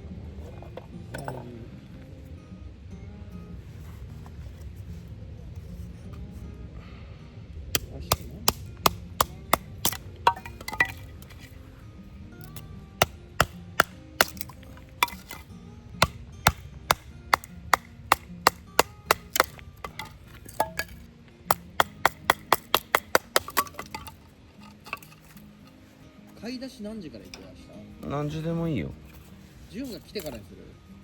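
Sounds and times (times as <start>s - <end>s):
chopping knocks on wood: 16.0s - 24.1s.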